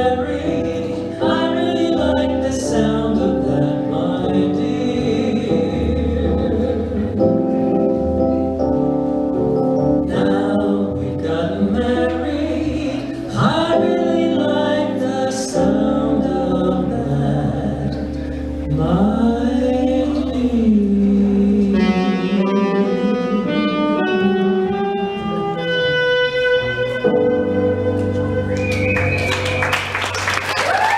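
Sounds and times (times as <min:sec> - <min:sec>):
person singing: 0:00.0 - 0:08.0, 0:10.0 - 0:25.4
instrumental backing: 0:00.0 - 0:30.9.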